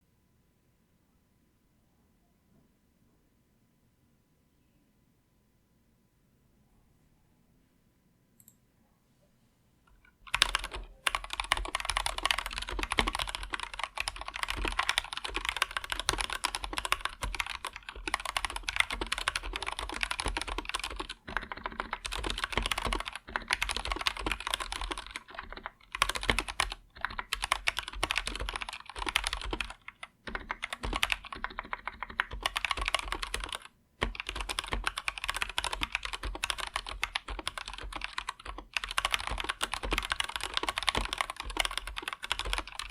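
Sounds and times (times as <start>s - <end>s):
fast keyboard typing: 9.9s - 42.9s.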